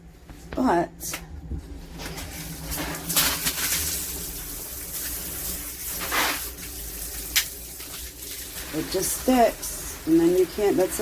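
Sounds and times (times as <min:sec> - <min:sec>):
water spraying from shower head: 0:02.3 - 0:11.0.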